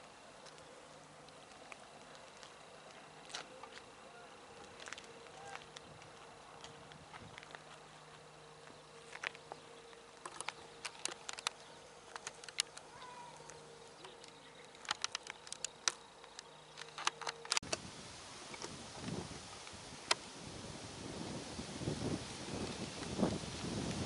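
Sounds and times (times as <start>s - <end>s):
faint steady hum: 0.0s - 24.0s
sharp ticks and clicks: 9.3s - 17.7s.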